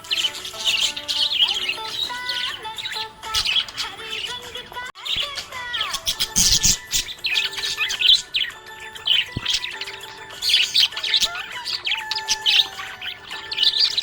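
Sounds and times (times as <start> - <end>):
parrots chirping and squawking: 0.0 - 14.0.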